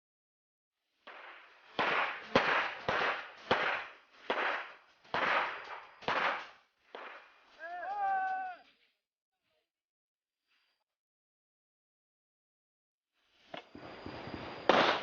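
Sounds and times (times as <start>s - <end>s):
pistol shots reverberating: 1.1s - 7.3s.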